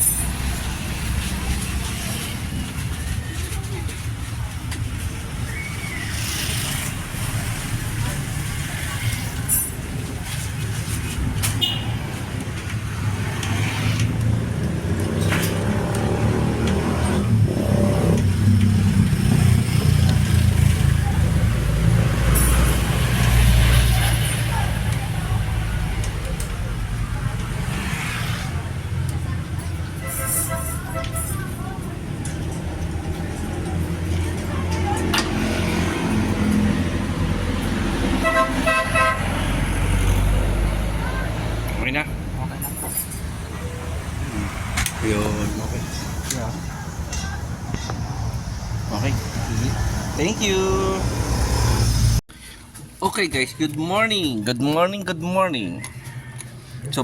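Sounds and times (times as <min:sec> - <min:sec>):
vehicle engine rumbling: 0:00.0 - 0:53.0
passing traffic hum: 0:00.0 - 0:57.0
vehicle horn toots: 0:11.6 - 0:12.0, 0:38.2 - 0:39.3.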